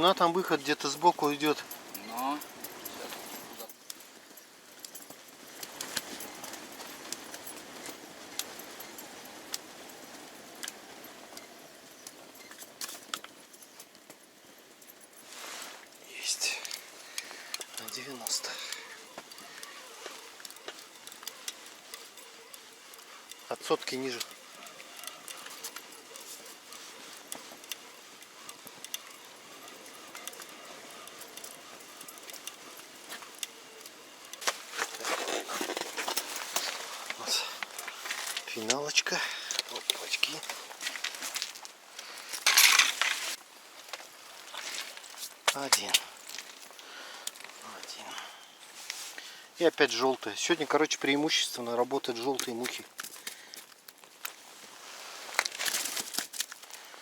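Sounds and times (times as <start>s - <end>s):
rustling: 0.0s - 57.0s
fishing reel ticking: 15.8s - 43.2s
sharp clicks and clinks: 42.3s - 47.6s.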